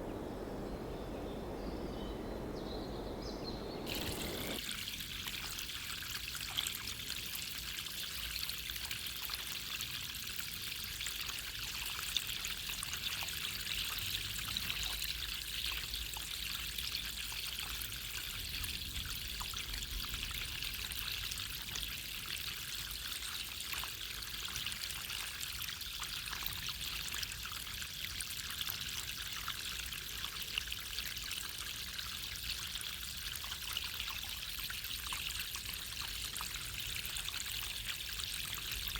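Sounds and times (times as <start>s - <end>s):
running water pouring: 3.6s - 7.6s.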